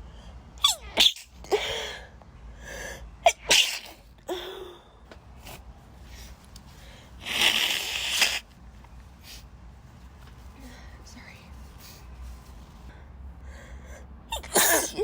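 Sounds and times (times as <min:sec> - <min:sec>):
breathing: 0:01.6 - 0:03.1, 0:06.1 - 0:07.2, 0:11.7 - 0:12.2, 0:12.8 - 0:14.2
woman sneezing: 0:03.2 - 0:04.0, 0:14.3 - 0:15.0
loud breathy sound: 0:12.8 - 0:14.2.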